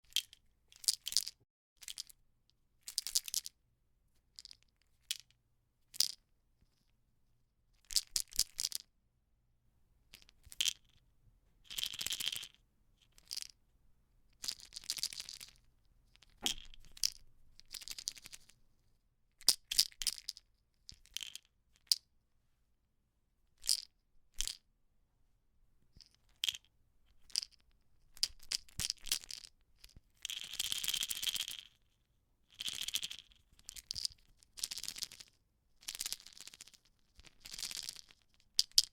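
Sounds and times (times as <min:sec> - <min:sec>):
pills rattling in plastic bottle: 0:32.5 - 0:38.9.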